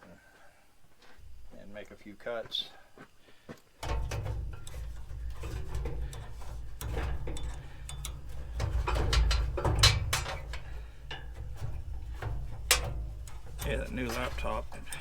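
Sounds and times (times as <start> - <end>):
metallic knocks and clanks: 3.8 - 15.0
steady low rumble: 3.8 - 15.0.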